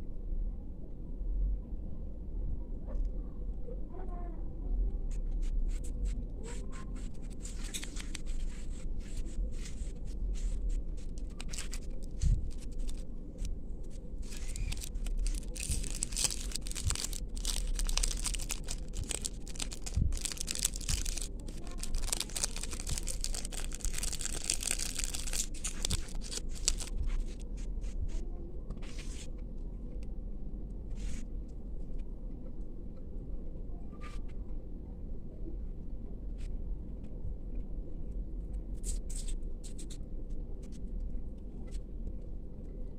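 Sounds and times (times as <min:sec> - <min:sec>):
steady low hum: 0:00.0 - 0:42.9
wrapping torn and crinkled: 0:07.0 - 0:09.3, 0:10.3 - 0:27.4.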